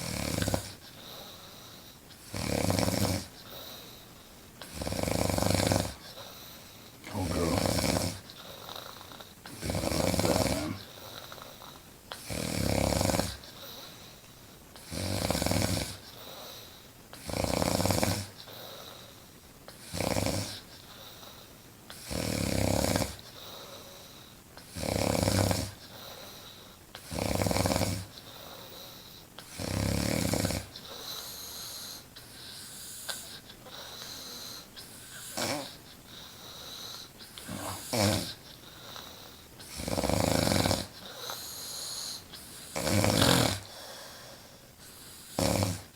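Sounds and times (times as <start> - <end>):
woman snoring: 2.3 - 3.3, 4.7 - 6.2, 7.0 - 11.0, 12.2 - 13.4, 14.9 - 16.0, 22.1 - 23.2, 35.2 - 35.8, 37.4 - 38.4, 39.0 - 44.0, 45.3 - 45.9.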